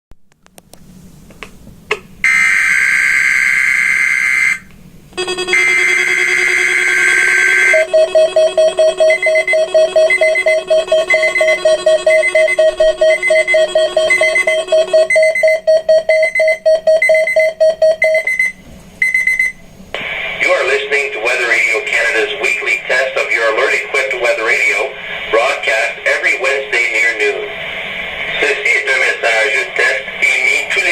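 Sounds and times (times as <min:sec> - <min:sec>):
electronic alert tone bursts: 0:05.2 - 0:19.5
pulsing alarm beeps: 0:05.2 - 0:19.6
short beeps: 0:05.2 - 0:19.6.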